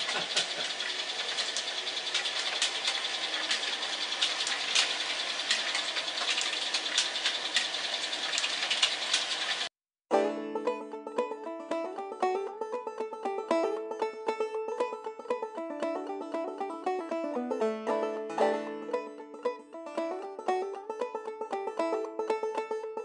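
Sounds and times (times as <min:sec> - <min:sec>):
plucked banjo music: 0:00.0 - 0:01.1, 0:10.1 - 0:23.0
model train mechanism clattering: 0:00.0 - 0:09.7.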